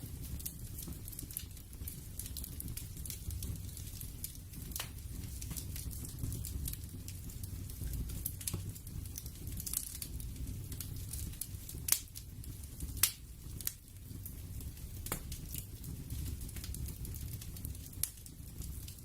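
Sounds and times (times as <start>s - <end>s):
sharp crackling pops and snaps: 0.0s - 19.0s.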